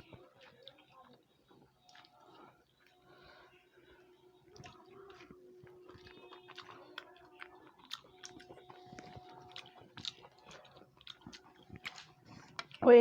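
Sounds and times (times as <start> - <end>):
chewing and lip smacks: 0.0 - 3.0, 4.4 - 12.8
faint steady hum: 0.0 - 13.0.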